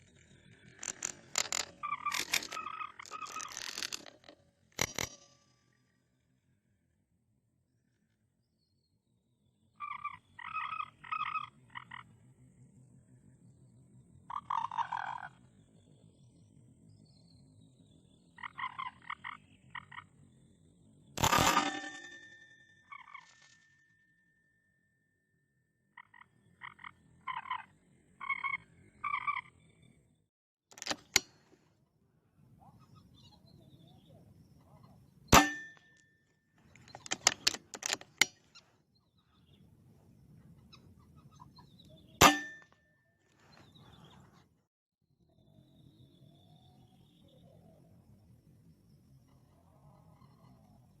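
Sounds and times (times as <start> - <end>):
moorhen croaking calls: 0.4 - 3.9, 9.8 - 12.1, 14.3 - 15.5, 18.4 - 20.1, 26.0 - 29.6
clicks and knocks: 0.7 - 5.4, 30.7 - 31.4, 36.8 - 38.4.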